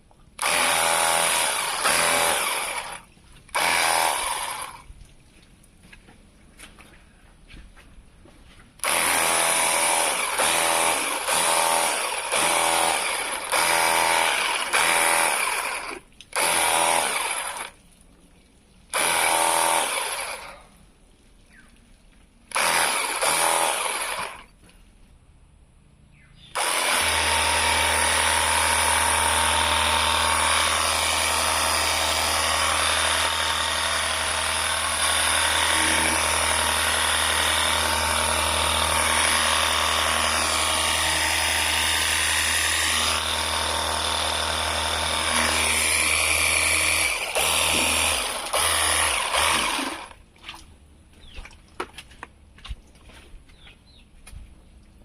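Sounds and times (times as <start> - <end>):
pressure washer running: 0.4 - 4.9, 8.8 - 17.8, 18.9 - 20.6, 26.6 - 50.2.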